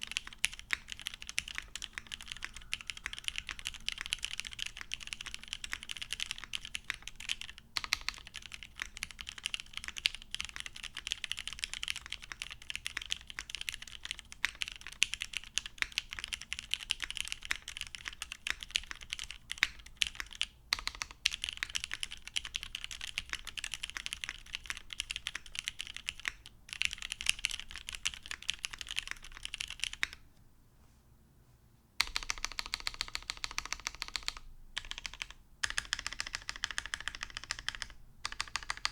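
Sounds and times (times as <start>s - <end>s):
fast typing on mechanical keyboard: 0.0s - 30.2s, 32.0s - 38.9s.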